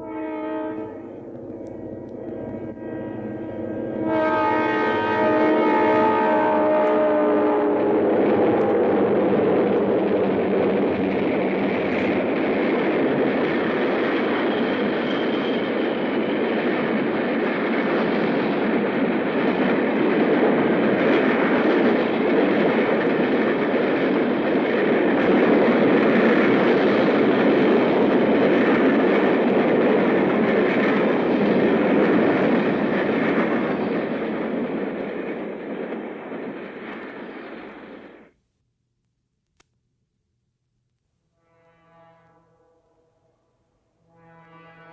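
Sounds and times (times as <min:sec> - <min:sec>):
diesel train horn: 0:00.0 - 0:08.8, 0:41.3 - 0:44.9
train rushing on rails: 0:00.0 - 0:38.4.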